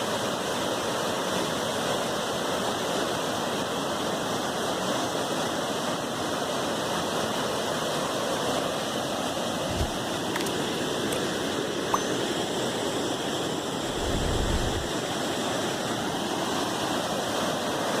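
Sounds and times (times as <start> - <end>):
rushing water of waterfall: 0.0 - 18.0
low rumble: 13.8 - 14.9.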